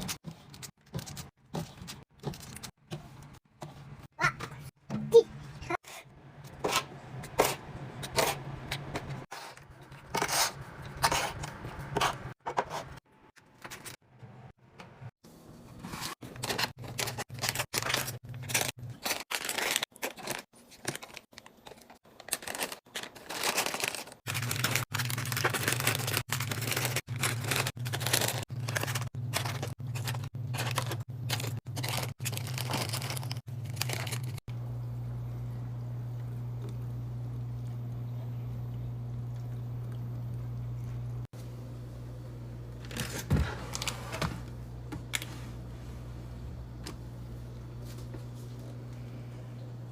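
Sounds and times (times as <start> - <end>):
packaging tearing and crinkling: 16.2 - 34.5
low steady hum: 24.4 - 49.9.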